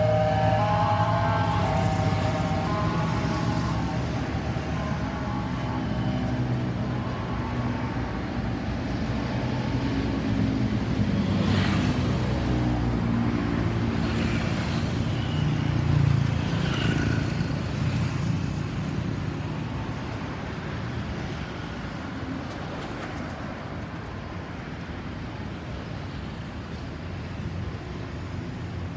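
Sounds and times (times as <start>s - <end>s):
road traffic noise: 0.0s - 28.9s.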